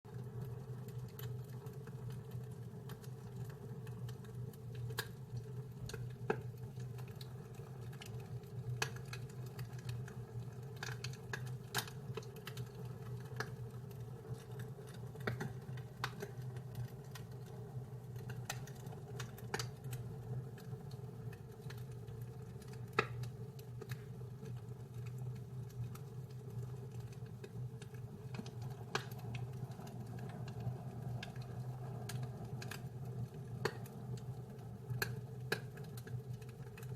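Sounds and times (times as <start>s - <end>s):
wood fire crackling: 0.1s - 36.9s.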